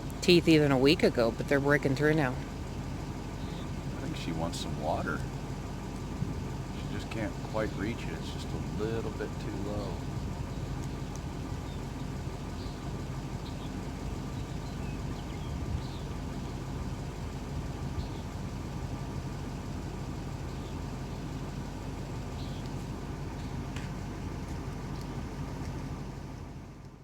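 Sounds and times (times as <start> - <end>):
low mechanical hum: 0.0 - 27.0
faint ticks: 10.0 - 12.8, 20.5 - 26.0.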